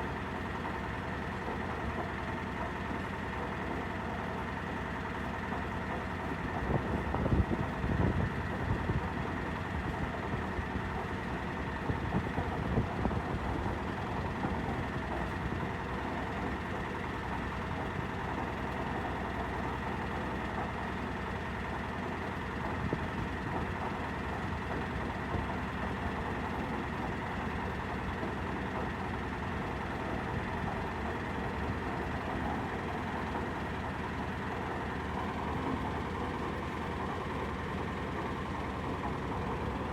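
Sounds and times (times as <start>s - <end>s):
heavy machinery engine droning: 22.6s - 39.9s.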